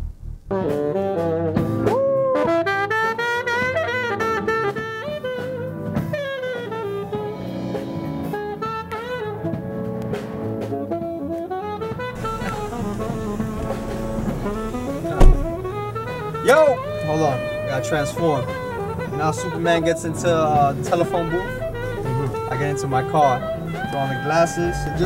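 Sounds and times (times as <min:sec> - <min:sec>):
drum kit: 0:00.0 - 0:02.6, 0:12.0 - 0:16.8
jazz saxophone melody: 0:00.4 - 0:25.0.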